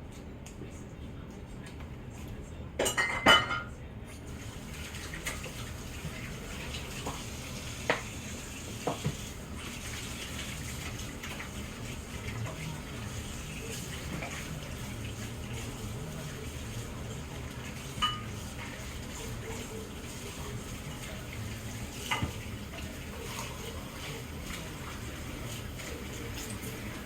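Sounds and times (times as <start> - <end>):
dishes and cutlery clinking: 2.8 - 8.1, 17.5 - 19.8, 20.7 - 27.0.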